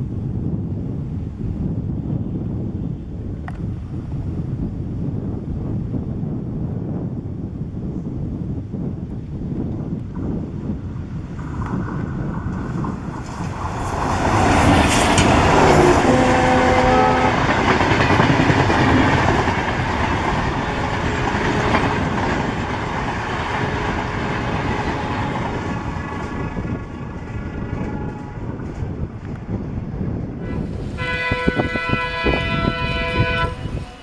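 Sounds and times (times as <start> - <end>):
diesel train passing: 8.8 - 34.0
train horn blast: 15.2 - 17.9, 23.6 - 25.6, 27.6 - 28.6, 30.4 - 34.0.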